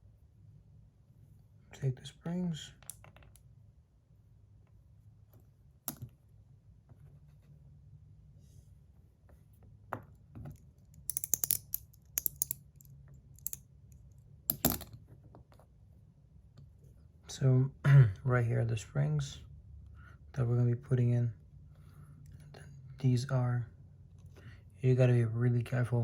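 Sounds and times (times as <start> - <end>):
metal parts clicking: 10.8 - 13.6, 14.5 - 15.0.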